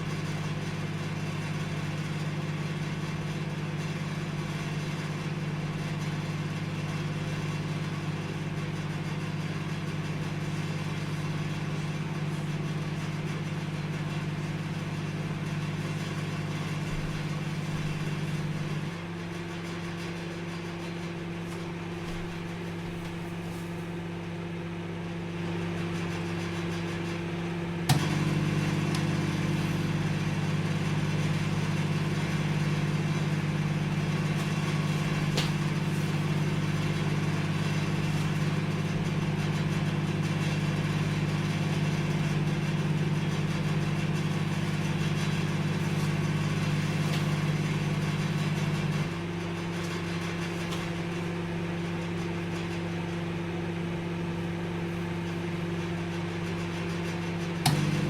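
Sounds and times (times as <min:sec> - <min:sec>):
microwave oven humming: 0:00.0 - 0:58.0
microwave click: 0:27.9 - 0:29.6, 0:57.6 - 0:58.0.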